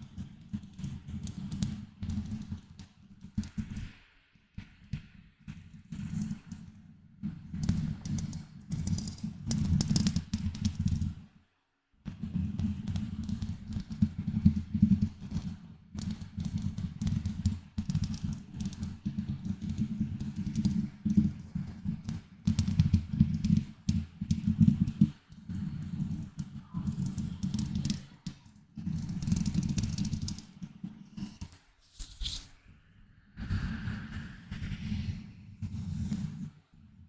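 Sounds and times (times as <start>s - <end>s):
scratching on microphone: 31.1s - 32.6s.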